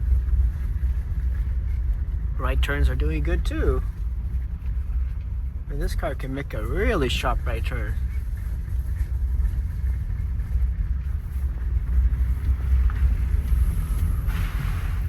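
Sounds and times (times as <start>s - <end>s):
low rumble inside minivan: 0.0s - 15.0s.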